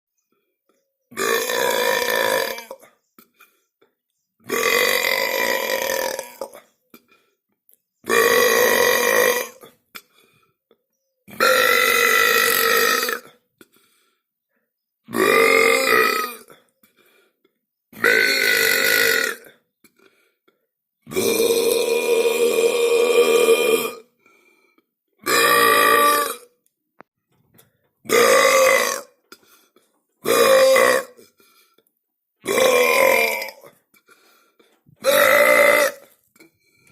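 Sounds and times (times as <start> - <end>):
person burping: 1.1 - 3.5, 4.4 - 7.2, 8.0 - 10.2, 11.3 - 13.7, 15.1 - 16.7, 17.9 - 20.0, 21.0 - 24.2, 25.2 - 26.6, 28.0 - 29.6, 30.2 - 31.4, 32.4 - 34.2, 35.0 - 36.6.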